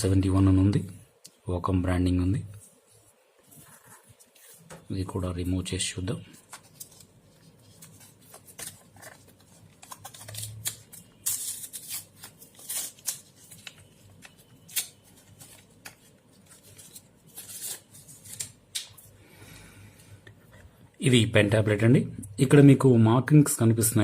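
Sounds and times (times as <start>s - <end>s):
plastic wrapping crinkling: 6.4s - 18.8s.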